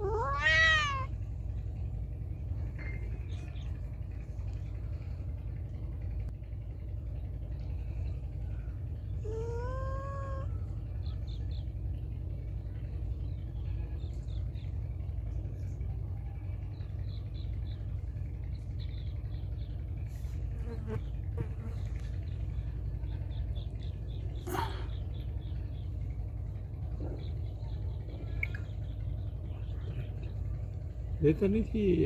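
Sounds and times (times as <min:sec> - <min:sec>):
cat meowing: 0:00.0 - 0:01.1, 0:09.2 - 0:10.5
steady low rumble: 0:00.0 - 0:32.0.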